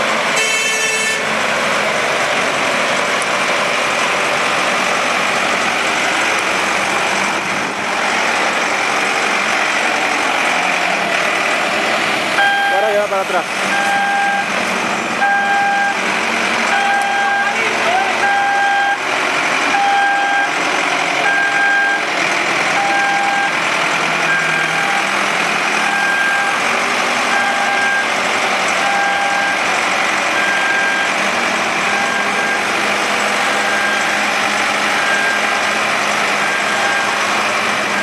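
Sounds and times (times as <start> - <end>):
diesel engine running: 0.0 - 38.0
reversing alarm beeping: 12.4 - 13.0, 13.7 - 14.5, 15.2 - 16.0, 16.7 - 17.6, 18.2 - 19.0, 19.7 - 20.6, 21.2 - 22.1, 22.8 - 23.6, 24.2 - 25.1, 25.7 - 26.6, 27.3 - 28.1, 28.8 - 29.7, 30.4 - 31.2, 31.8 - 32.8, 33.4 - 35.7, 36.3 - 37.3.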